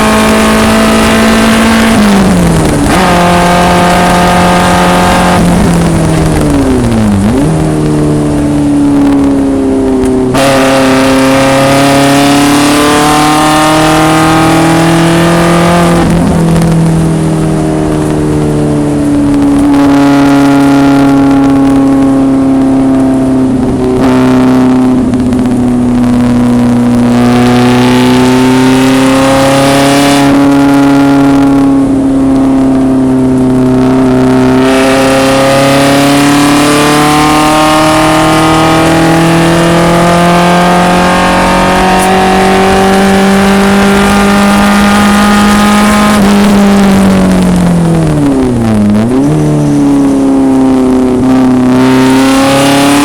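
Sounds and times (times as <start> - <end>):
racecar engine at high revs: 0.0 - 53.0
wind and road noise: 0.0 - 53.0.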